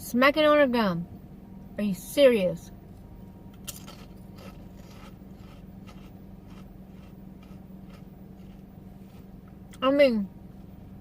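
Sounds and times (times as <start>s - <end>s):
low steady hum: 0.0s - 11.0s
chips being chewed: 3.6s - 9.3s.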